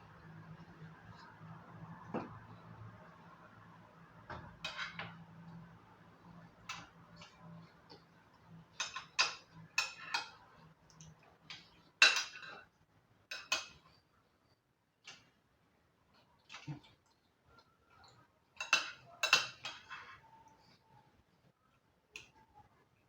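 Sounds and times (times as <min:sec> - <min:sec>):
cutlery clinking on a dish: 0:04.6 - 0:05.2, 0:08.7 - 0:10.4, 0:11.5 - 0:12.7, 0:13.3 - 0:13.9, 0:18.6 - 0:20.2.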